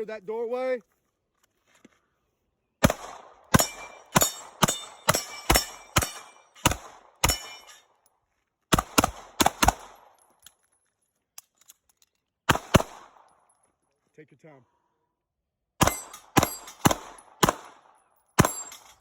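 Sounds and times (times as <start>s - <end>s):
gunshots with echo: 2.8s - 7.5s, 15.8s - 17.8s.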